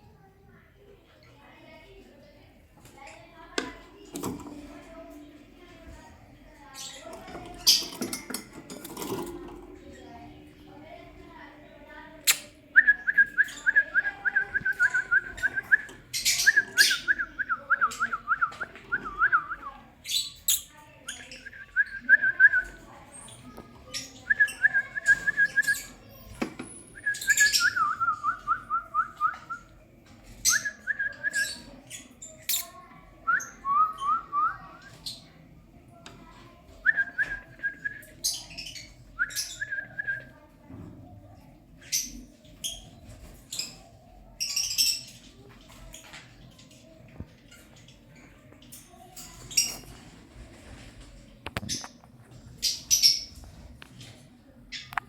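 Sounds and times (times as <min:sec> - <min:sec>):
birds chirping: 0:01.2 - 0:35.8, 0:36.6 - 0:40.4.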